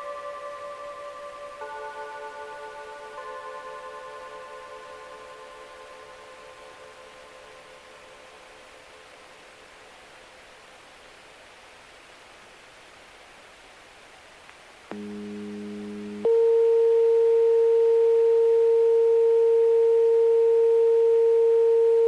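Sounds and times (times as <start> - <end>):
low buzzing tone: 14.9 - 22.0
steady electronic tone: 14.9 - 22.0.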